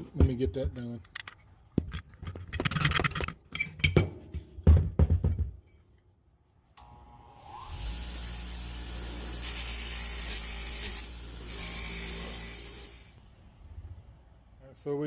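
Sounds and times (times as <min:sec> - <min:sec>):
tools knocking and scraping: 0:00.0 - 0:06.0.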